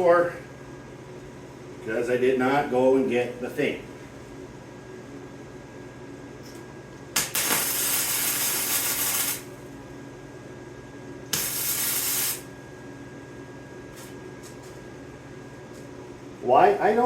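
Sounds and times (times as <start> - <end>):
steady low hum: 0.0 - 17.0
welder arc crackling and hissing: 7.1 - 9.8, 11.2 - 12.5.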